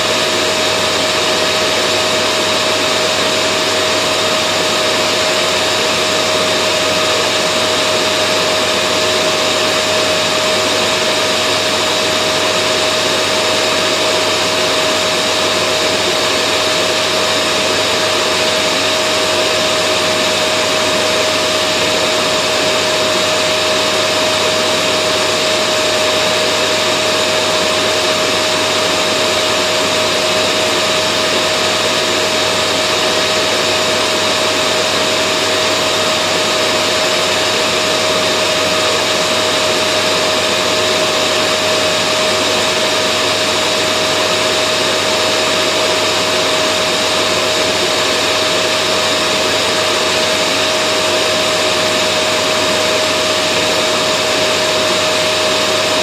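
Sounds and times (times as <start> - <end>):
vacuum cleaner motor running: 0.0 - 56.0.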